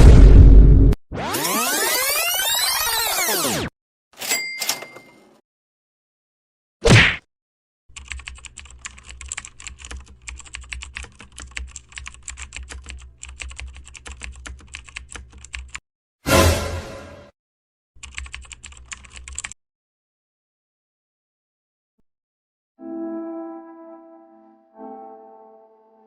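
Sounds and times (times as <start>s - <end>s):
keyboard typing: 7.9s - 15.8s, 18.0s - 19.6s.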